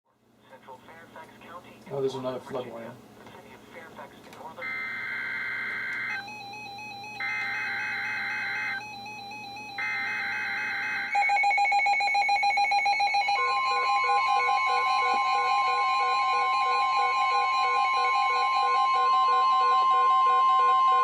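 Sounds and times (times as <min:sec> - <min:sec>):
data header tones: 0:04.6 - 0:21.0
steady warning alarm tone: 0:04.6 - 0:21.0.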